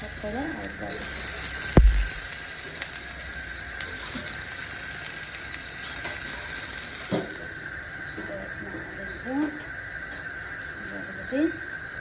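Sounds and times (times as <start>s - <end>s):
food sizzling in oil: 0.0s - 8.2s
heavy thump: 1.8s - 2.3s.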